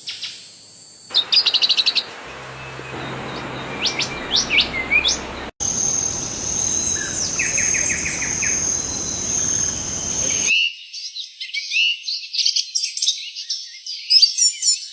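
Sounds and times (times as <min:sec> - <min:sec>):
insects droning: 0:00.0 - 0:10.5
small birds chirping: 0:01.0 - 0:14.9
bird trilling: 0:01.1 - 0:10.5.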